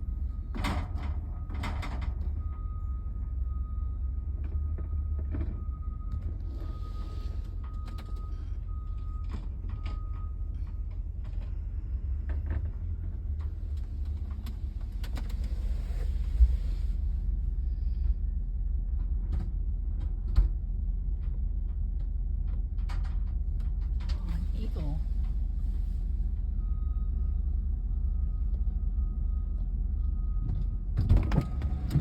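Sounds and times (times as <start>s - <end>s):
vehicle engine rumbling: 0.0s - 32.0s
knocks and clunks: 0.5s - 2.7s.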